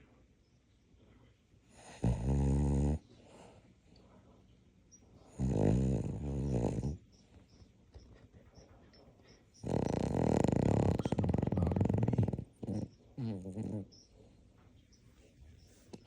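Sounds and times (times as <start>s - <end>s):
dog snoring: 1.7s - 3.0s, 5.3s - 7.0s, 9.6s - 14.0s.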